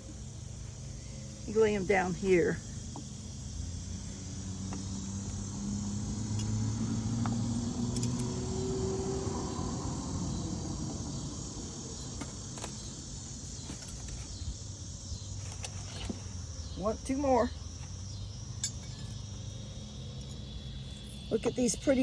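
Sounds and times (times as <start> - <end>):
cicadas droning: 0.0 - 22.0
vehicle engine driving past: 3.4 - 12.2.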